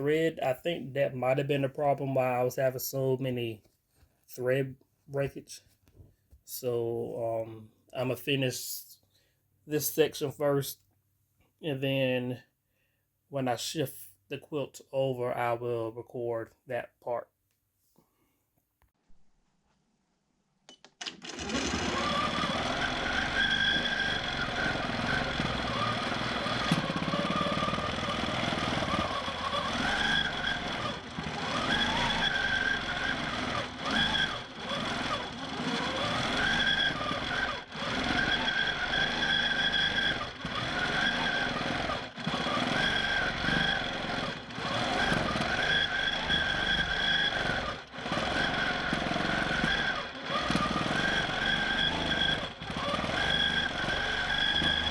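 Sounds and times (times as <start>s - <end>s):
quilting machine motor whine: 21.0s - 54.9s.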